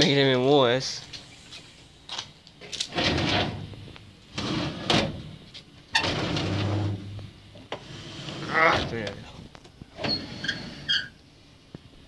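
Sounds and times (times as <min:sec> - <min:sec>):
drawers sliding and knocking: 0:02.9 - 0:05.4, 0:06.0 - 0:09.2.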